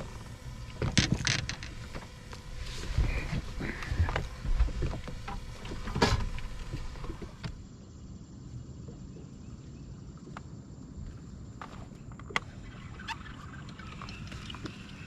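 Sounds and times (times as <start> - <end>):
knocks and rattles in a boat: 0.0 - 7.6.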